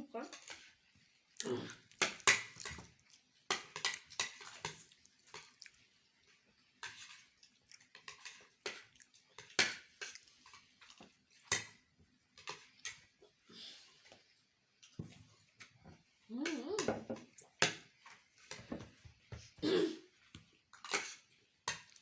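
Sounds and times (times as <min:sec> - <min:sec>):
cutlery clinking on plates: 0:03.5 - 0:05.6, 0:06.8 - 0:11.8, 0:12.4 - 0:13.1, 0:20.8 - 0:22.0.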